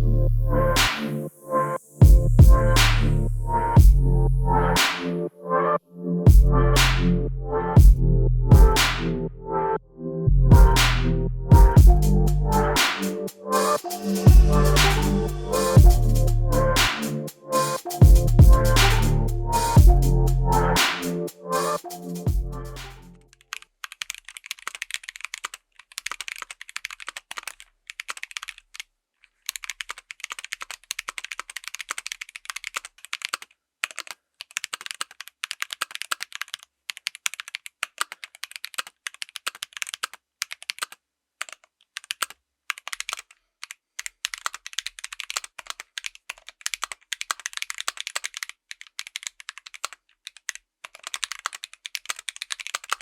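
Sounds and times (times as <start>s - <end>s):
mechanical keyboard typing: 23.3s - 53.0s.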